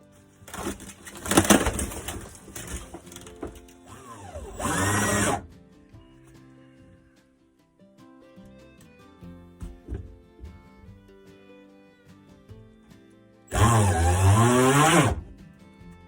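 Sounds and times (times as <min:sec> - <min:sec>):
background music: 0:00.0 - 0:16.0
knocking and clatter on wood: 0:00.5 - 0:03.8, 0:09.6 - 0:11.0
power drill motor spinning: 0:00.5 - 0:05.5, 0:13.5 - 0:15.3.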